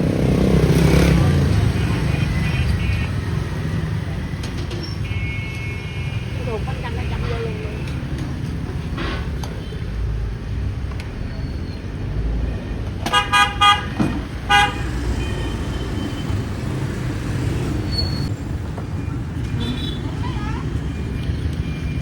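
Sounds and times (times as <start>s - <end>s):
street traffic hum: 0.0s - 22.0s
vehicle horn toots: 5.0s - 6.4s, 13.1s - 16.5s.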